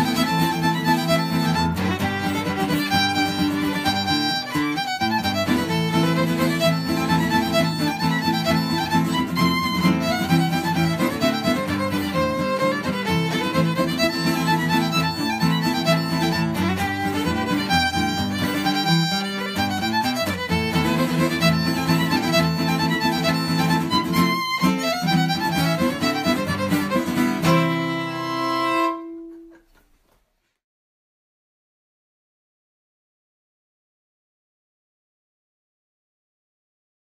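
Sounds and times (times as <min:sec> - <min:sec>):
fiddle playing a fast reel: 0:00.0 - 0:29.4
guitar accompaniment: 0:00.0 - 0:30.0.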